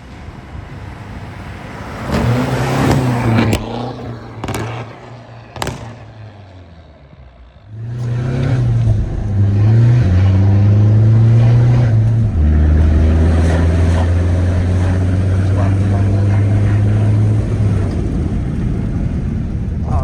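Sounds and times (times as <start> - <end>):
loud diesel engine exhaust: 0.0 - 20.0
sharp clicks: 2.9 - 6.3.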